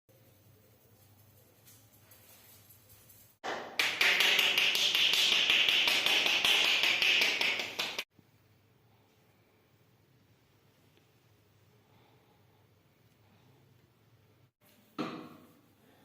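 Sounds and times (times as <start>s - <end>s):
rapid hand tapping massage: 3.8s - 8.1s.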